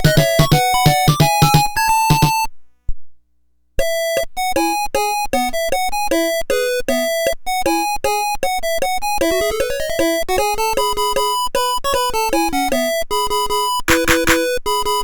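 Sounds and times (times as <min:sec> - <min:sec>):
toy electronic music: 0:13.9 - 0:14.6.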